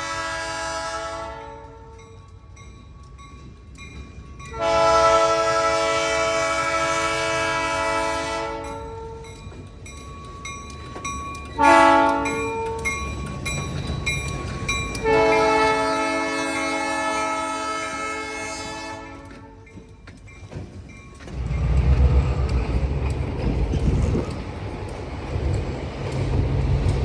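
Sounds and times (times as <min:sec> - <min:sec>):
locomotive air horn blasts: 0:00.0 - 0:02.0, 0:04.5 - 0:09.2, 0:11.6 - 0:12.9, 0:15.0 - 0:19.6
low train rumble: 0:00.0 - 0:27.0
wheels clicking over rail joints: 0:01.9 - 0:27.0.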